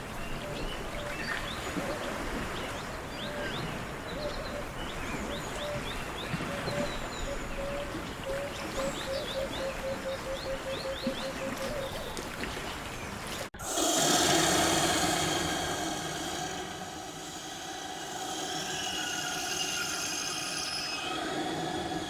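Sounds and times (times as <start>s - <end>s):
birds chirping: 13.8s - 22.0s
low repeated bird call notes: 13.9s - 22.0s.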